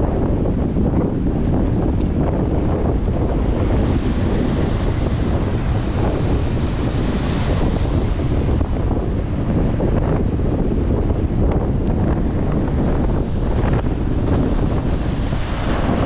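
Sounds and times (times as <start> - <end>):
wind buffeting microphone: 0.0 - 16.0
surf breaking: 11.1 - 16.0.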